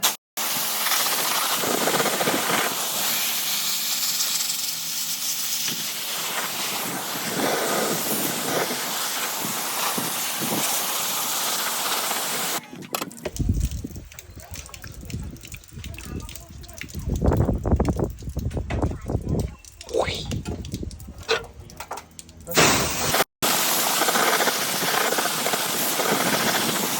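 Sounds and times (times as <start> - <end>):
high-pressure water spray hissing: 0.0 - 12.7, 22.5 - 26.9.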